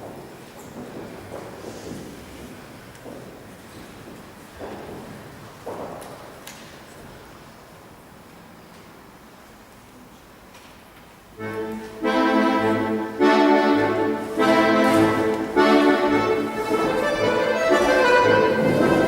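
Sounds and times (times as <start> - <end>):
accordion music: 11.4 - 19.0.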